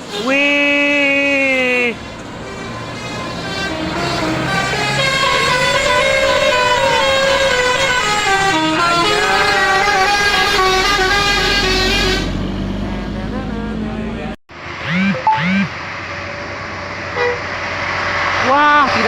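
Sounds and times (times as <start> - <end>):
bus engine rumble: 0.0 - 19.0
musical air horns: 2.0 - 14.1, 17.1 - 17.6.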